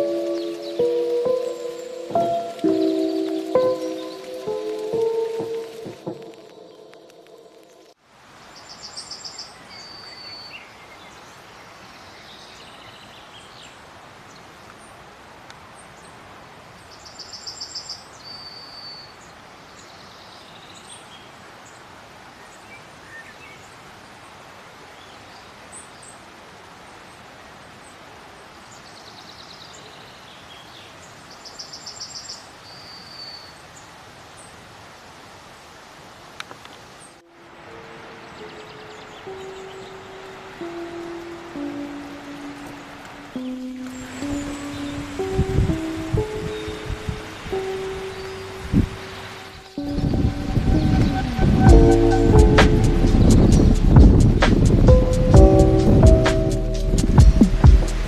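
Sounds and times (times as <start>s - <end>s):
songbird singing trill: 0.0s - 7.9s, 37.8s - 57.8s
steady outdoor hiss: 0.0s - 58.0s
faint bird chirps: 46.4s - 53.9s.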